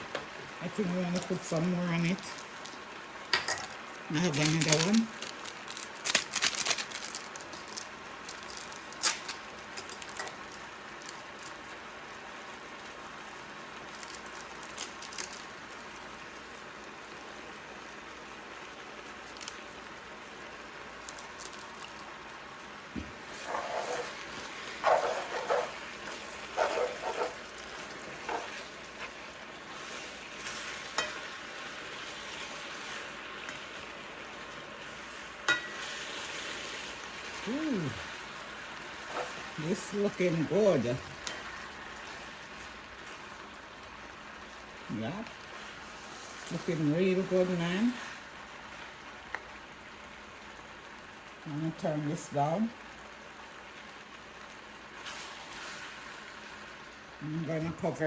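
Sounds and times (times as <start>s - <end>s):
food sizzling in a pan: 0.0s - 58.0s
scraping and knocking from stirring: 23.0s - 31.3s.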